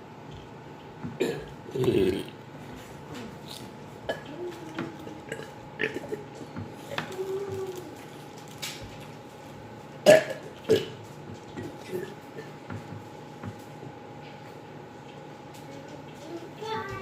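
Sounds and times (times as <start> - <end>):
person burping: 1.2 - 2.4, 5.3 - 6.3, 10.0 - 11.0.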